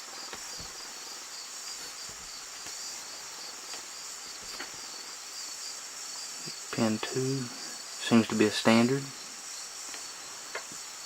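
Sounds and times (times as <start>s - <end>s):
crickets chirping: 0.0s - 11.0s
faint clicks: 9.9s - 10.8s.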